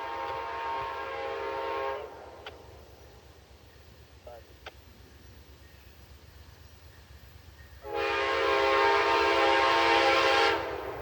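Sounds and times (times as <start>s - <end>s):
locomotive air horn chord: 0.0s - 2.2s, 7.8s - 10.9s.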